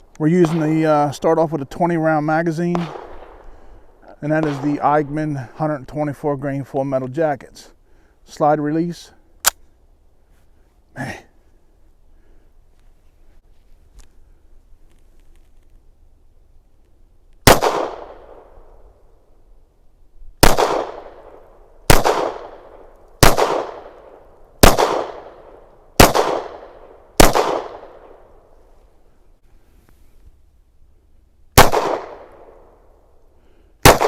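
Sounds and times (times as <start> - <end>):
pistol shots with echo: 2.7 - 3.4, 4.3 - 5.1, 17.4 - 18.8, 20.4 - 28.3, 31.6 - 32.7.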